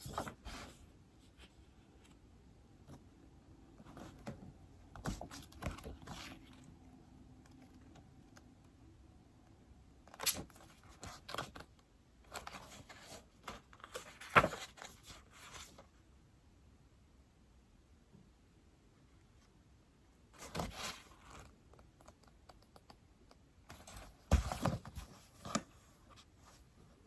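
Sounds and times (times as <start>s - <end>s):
stylus tapping and scratching tablet: 21.6s - 23.5s.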